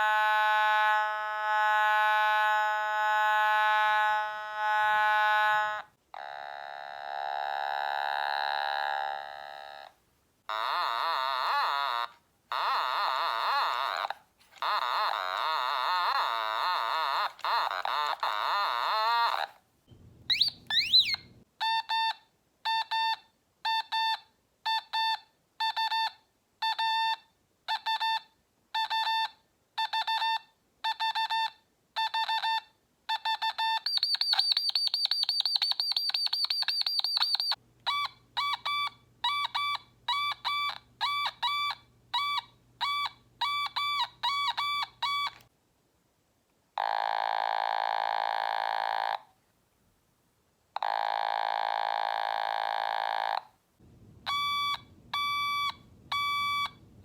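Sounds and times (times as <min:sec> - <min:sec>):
otamatone short beeps: 0:20.3 - 0:22.1, 0:33.9 - 0:45.4, 0:54.3 - 0:56.8.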